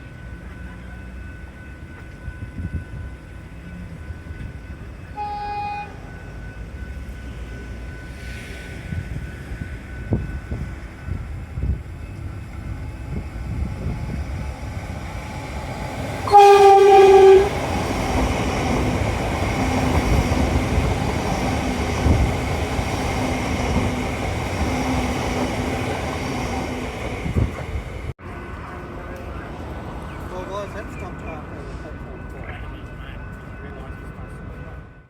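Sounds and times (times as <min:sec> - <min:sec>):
train running with rumble and hum: 0:00.0 - 0:35.0
train horn blast: 0:05.2 - 0:06.1, 0:16.2 - 0:17.6.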